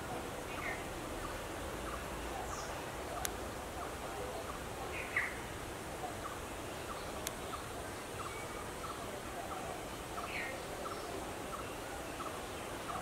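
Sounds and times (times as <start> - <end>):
steady background hiss: 0.0 - 13.0
faint sharp clicks: 3.1 - 3.4, 7.1 - 7.6.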